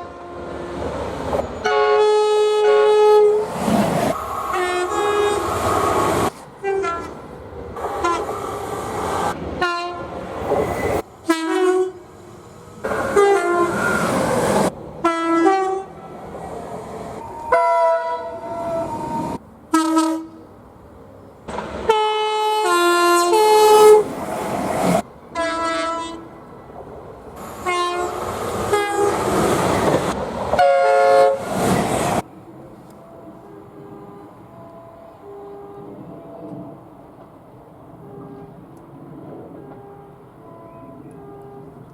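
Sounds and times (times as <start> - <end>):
train horn blasts: 0.0 - 0.6, 1.6 - 3.4, 4.5 - 5.6, 6.6 - 7.2, 8.0 - 8.3, 9.6 - 10.1, 11.2 - 12.0, 13.0 - 14.0, 15.0 - 16.0, 17.4 - 20.4, 21.9 - 24.0, 25.3 - 26.3, 27.6 - 29.3, 30.6 - 31.5, 33.0 - 36.0, 39.6 - 41.8
moving trains: 0.0 - 41.9.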